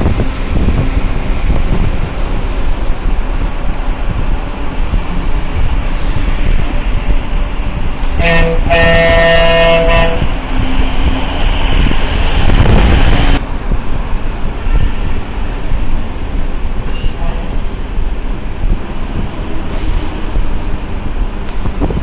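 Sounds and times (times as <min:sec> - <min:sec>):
passing vehicle rush: 0:00.0 - 0:16.8, 0:17.4 - 0:22.0
road traffic rumble: 0:00.0 - 0:22.0
wind on microphone: 0:00.0 - 0:22.0
vehicle horn honking: 0:08.2 - 0:10.3.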